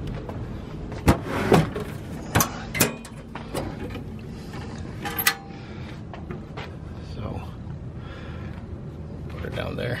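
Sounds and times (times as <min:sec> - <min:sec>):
metal tools clanking: 0:02.2 - 0:05.5.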